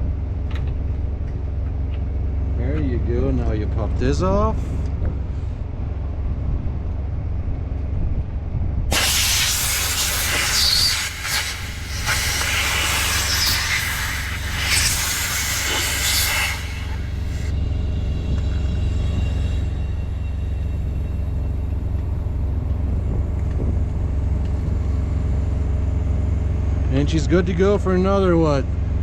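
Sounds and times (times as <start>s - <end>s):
low steady rumble: 0.0s - 29.0s
compressed air hissing: 8.9s - 17.5s.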